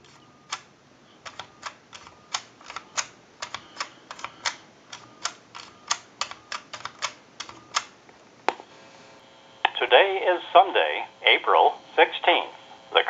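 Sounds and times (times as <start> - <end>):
faint dialling tones: 0.0 - 7.9, 8.6 - 13.0
keypad button clicks: 1.3 - 7.9.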